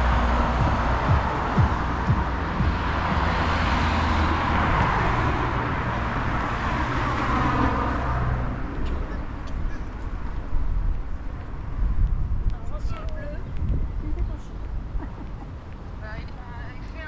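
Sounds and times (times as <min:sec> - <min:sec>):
car driving past: 0:00.0 - 0:09.5.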